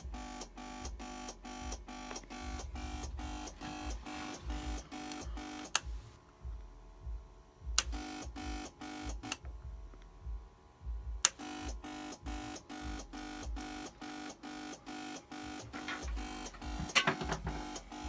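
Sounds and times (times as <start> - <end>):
electrical buzzing pulse: 0.0 - 18.0.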